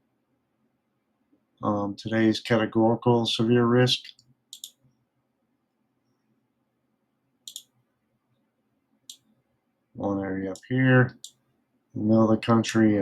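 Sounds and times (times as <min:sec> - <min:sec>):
computer mouse clicks: 0:04.1 - 0:05.0, 0:07.4 - 0:07.8, 0:09.1 - 0:09.3, 0:10.5 - 0:11.4.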